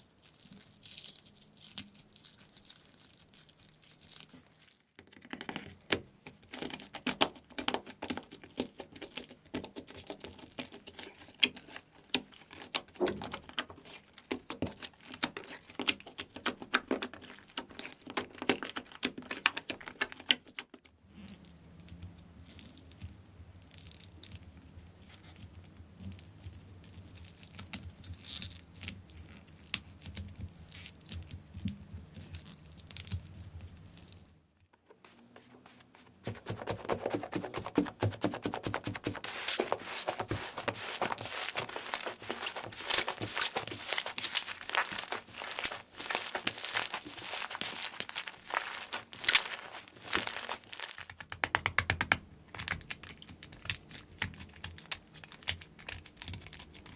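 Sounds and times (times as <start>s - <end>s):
deep full slime squish: 0.0s - 5.6s, 35.0s - 52.0s
slime clicking and crackling: 0.0s - 34.2s, 36.3s - 56.9s.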